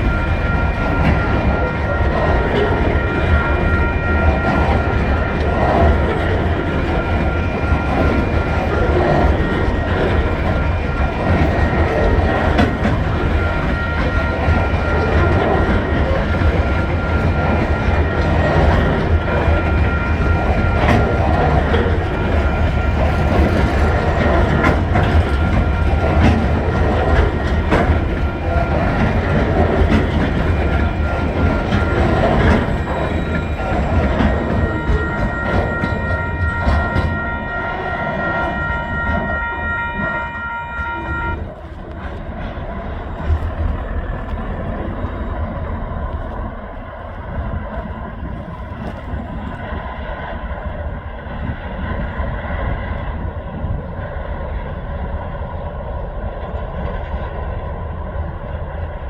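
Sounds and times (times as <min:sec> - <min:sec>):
wheels clacking over rail joints: 0:00.0 - 0:40.2
high ringing tones: 0:00.0 - 0:41.8
train wagons rumbling past: 0:00.0 - 0:59.0.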